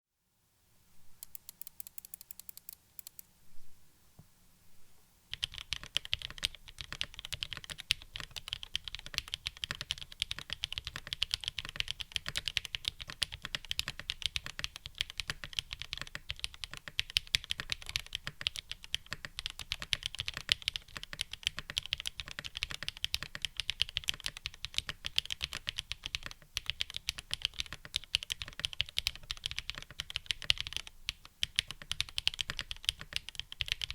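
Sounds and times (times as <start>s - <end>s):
mechanical keyboard typing: 1.2s - 3.3s, 5.3s - 33.9s.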